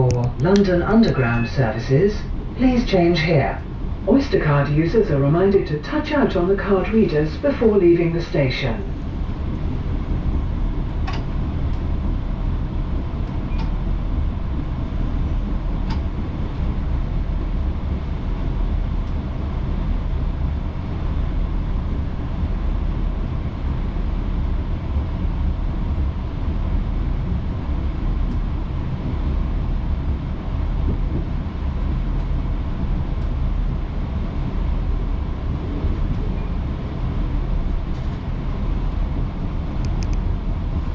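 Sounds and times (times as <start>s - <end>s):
train rumbling on track: 0.0s - 40.9s
faint clicks: 39.7s - 40.3s.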